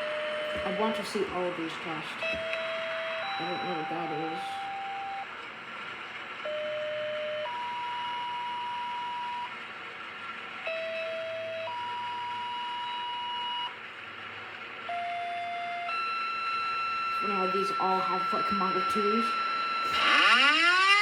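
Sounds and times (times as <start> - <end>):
two-tone paging tones: 0.0 - 5.3, 10.6 - 13.7, 14.9 - 20.8.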